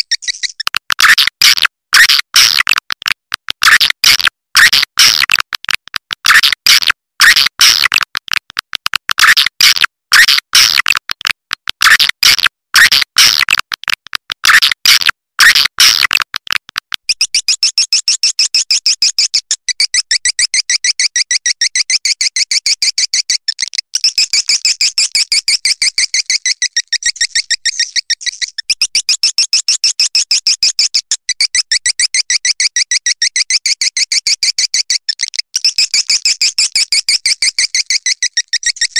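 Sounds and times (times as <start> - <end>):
swiftlet chirps and twittering: 0.0 - 1.2, 17.1 - 38.9.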